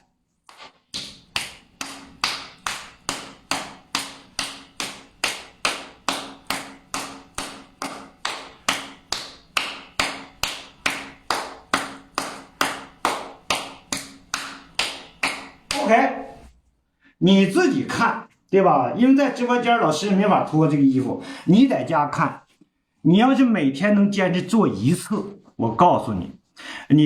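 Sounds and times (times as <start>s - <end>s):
palm slapping shoulder: 0.5s - 16.0s.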